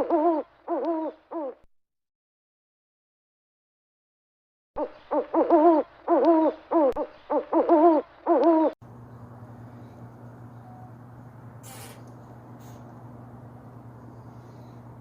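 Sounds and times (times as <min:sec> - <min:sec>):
owl hooting: 0:00.0 - 0:01.7, 0:04.8 - 0:08.8
steady low hum: 0:08.0 - 0:15.0.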